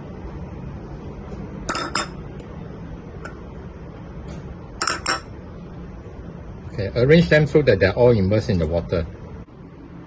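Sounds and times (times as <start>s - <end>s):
steady low hum: 0.0s - 10.0s
crockery clinking: 1.7s - 2.2s, 4.8s - 5.3s.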